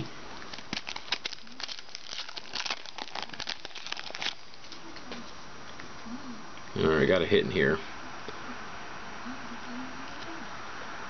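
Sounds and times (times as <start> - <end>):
foil wrappers crinkling: 0.0 - 5.4.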